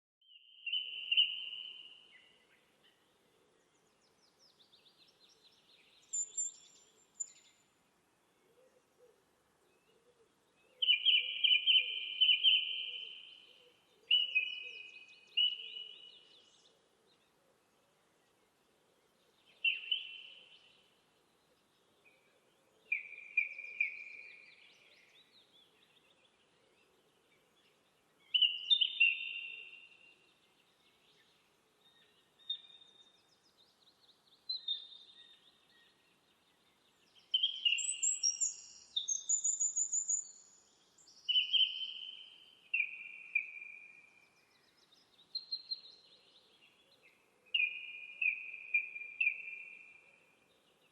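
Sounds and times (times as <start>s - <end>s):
higher-pitched birdsong: 4.0s - 7.6s, 27.7s - 46.9s.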